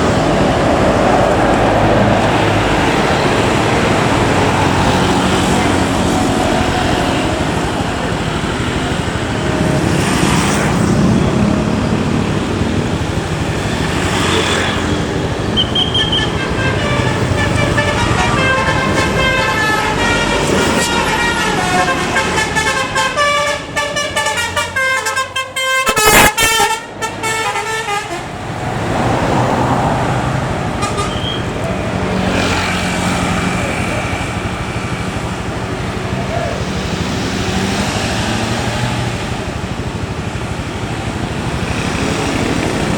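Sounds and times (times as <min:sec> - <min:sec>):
loud rush of noise: 0:00.0 - 0:23.8, 0:28.2 - 0:42.9
bus driving on road: 0:00.0 - 0:42.9
multi-tone horn playing tune: 0:15.9 - 0:28.3.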